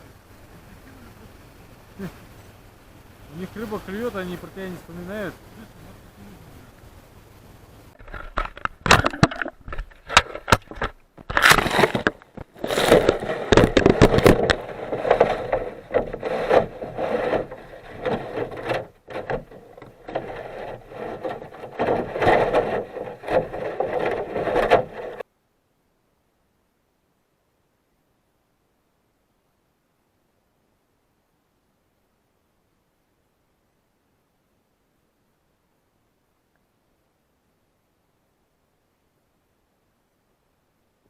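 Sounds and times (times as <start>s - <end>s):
irregular scraping: 7.9s - 25.2s
sharp knocks and clatters: 8.0s - 25.2s.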